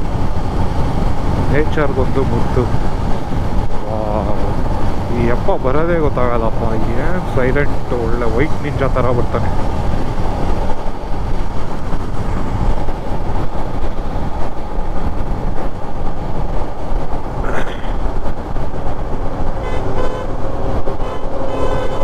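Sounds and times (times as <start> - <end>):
wind rush: 0.0 - 22.0
vehicle horn honking: 19.6 - 20.4, 21.0 - 22.0.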